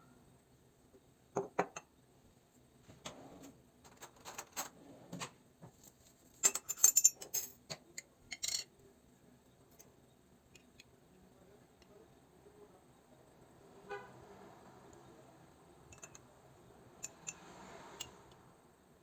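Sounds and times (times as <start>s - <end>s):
kitchenware clinking: 6.4s - 8.7s, 15.9s - 16.2s.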